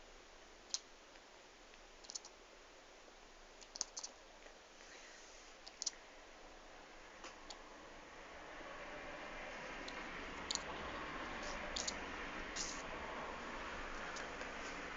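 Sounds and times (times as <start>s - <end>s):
kitten teeth chattering: 2.0s - 2.3s, 3.6s - 4.1s, 5.6s - 6.0s, 11.8s - 12.0s.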